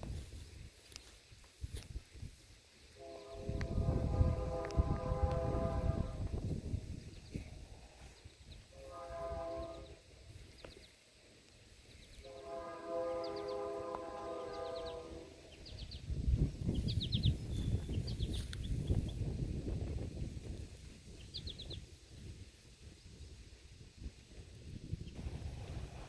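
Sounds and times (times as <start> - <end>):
distant locomotive horn: 3.0 - 6.4, 8.7 - 10.1, 12.2 - 15.6
low rumbling noise: 3.0 - 10.7, 11.8 - 26.0.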